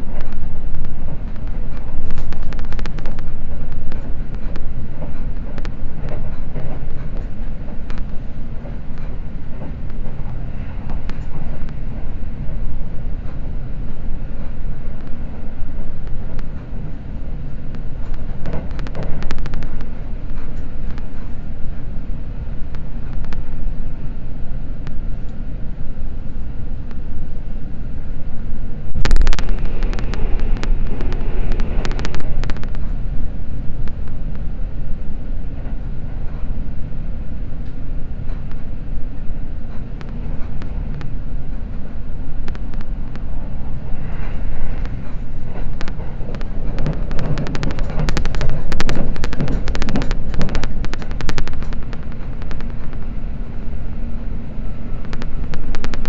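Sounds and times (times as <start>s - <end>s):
train wheels rumbling on rail: 0.0s - 56.0s
clicks of train wheels: 0.1s - 21.9s, 28.9s - 34.5s, 37.6s - 53.1s.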